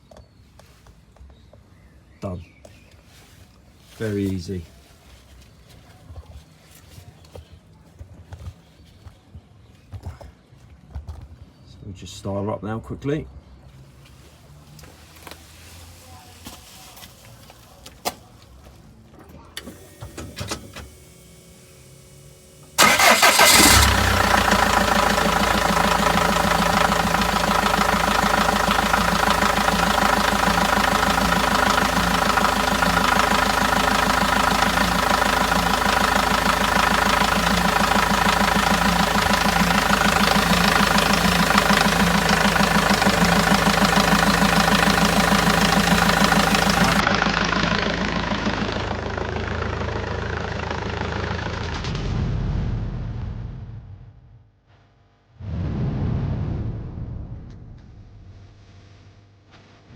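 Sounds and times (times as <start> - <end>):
diesel engine starting and idling: 19.2 - 52.0.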